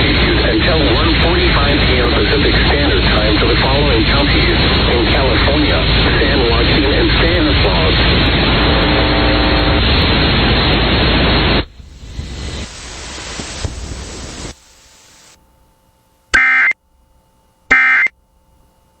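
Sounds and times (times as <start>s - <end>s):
static hiss: 3.8s - 15.5s
shrill digital data tones: 16.4s - 16.8s, 17.7s - 18.1s.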